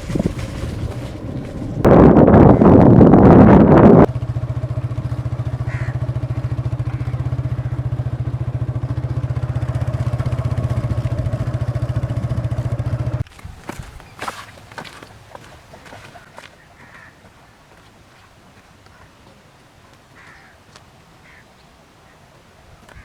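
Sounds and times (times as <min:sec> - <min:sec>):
engine idling: 0:00.0 - 0:13.2.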